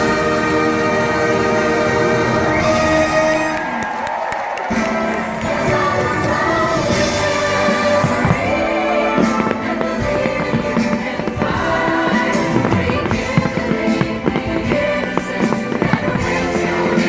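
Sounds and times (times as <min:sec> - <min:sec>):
fireworks banging and crackling: 0:02.5 - 0:17.0
music over speakers: 0:04.7 - 0:17.0.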